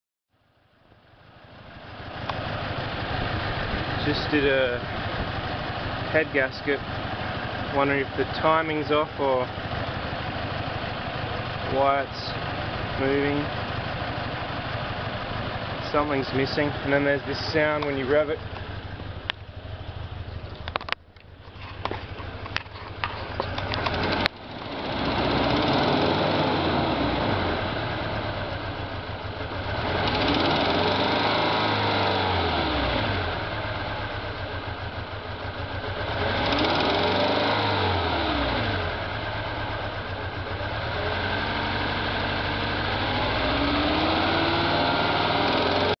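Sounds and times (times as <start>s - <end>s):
engine ticking: 0.8s - 46.0s
car engine revving: 21.8s - 34.4s, 35.7s - 46.0s.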